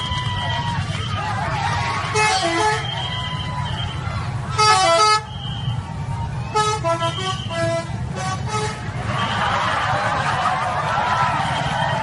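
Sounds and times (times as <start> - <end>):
bus multi-tone horn tunes: 2.0 - 5.8, 6.5 - 9.5.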